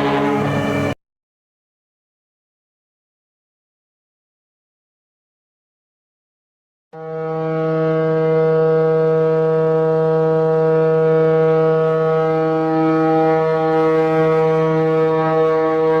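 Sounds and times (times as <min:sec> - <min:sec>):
ship's horn blast: 0:00.0 - 0:01.0, 0:07.0 - 0:16.0.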